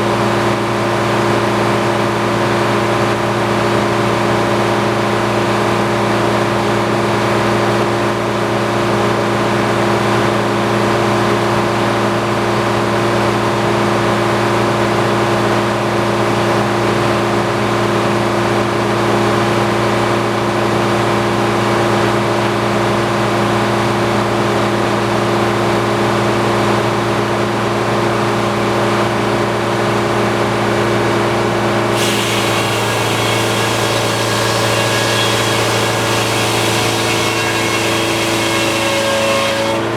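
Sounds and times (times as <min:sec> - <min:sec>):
sawmill saw blade drone: 0:25.4 - 0:39.9.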